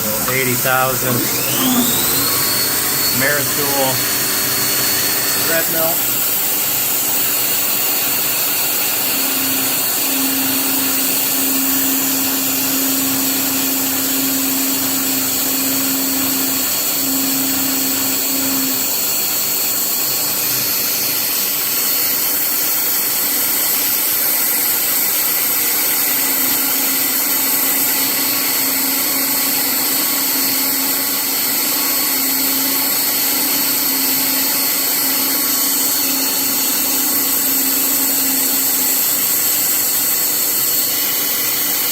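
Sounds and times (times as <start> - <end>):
high whine: 0.0 - 6.1
milling machine hissing rush: 0.0 - 11.9.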